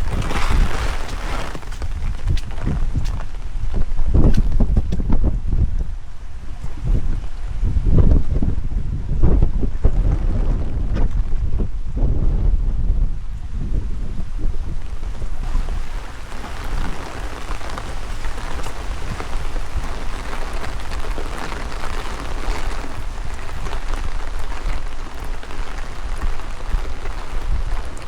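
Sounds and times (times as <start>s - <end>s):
steady rain falling: 0.0s - 8.1s, 14.6s - 28.0s
wind buffeting microphone: 0.0s - 28.0s.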